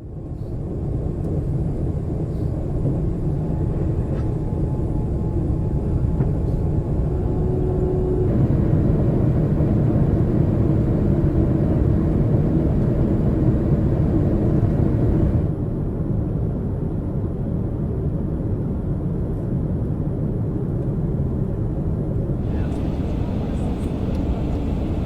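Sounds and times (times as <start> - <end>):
airliner cabin rumble with hiss: 0.0 - 15.5, 22.3 - 25.0.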